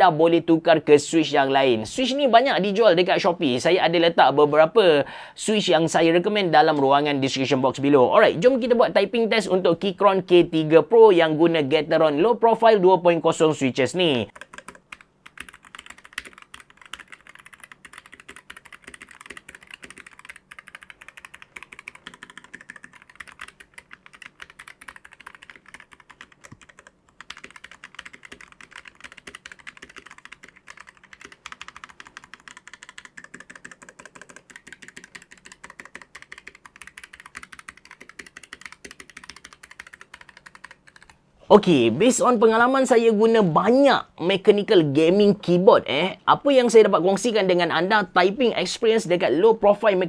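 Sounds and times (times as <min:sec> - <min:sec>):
mechanical keyboard typing: 0:14.3 - 0:41.2.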